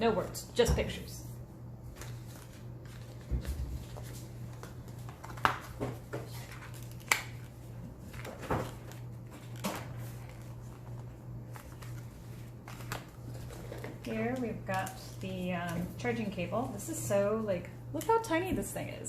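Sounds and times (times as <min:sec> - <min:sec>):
steady low hum: 0:00.0 - 0:19.0
cardboard and paper rustling: 0:01.9 - 0:16.4.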